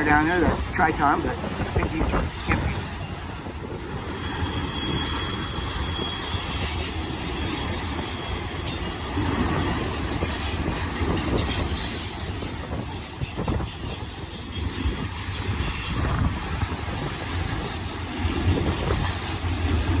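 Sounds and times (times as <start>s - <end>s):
rumble of train wheels on rails: 0.0s - 20.0s
high-pitched wheel squeal: 4.2s - 8.4s.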